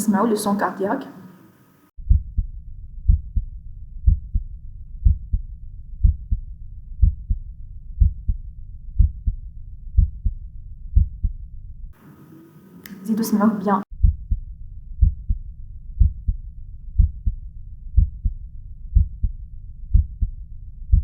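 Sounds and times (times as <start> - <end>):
heartbeat lub-dub: 2.0 - 2.5, 3.1 - 9.4, 10.0 - 10.4, 11.0 - 11.4, 14.0 - 14.4, 15.0 - 15.4, 16.0 - 16.4, 17.0 - 21.0.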